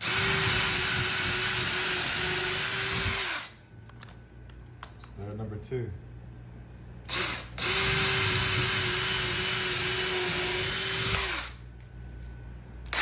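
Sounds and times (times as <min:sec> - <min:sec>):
power drill drilling into wood: 0:00.0 - 0:03.6, 0:07.1 - 0:11.6.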